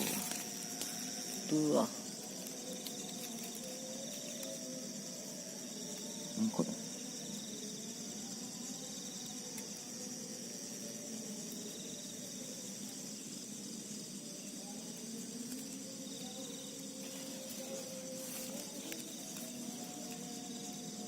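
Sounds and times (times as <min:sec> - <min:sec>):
crickets trilling: 0:00.0 - 0:21.0
low continuous drone: 0:14.1 - 0:21.0.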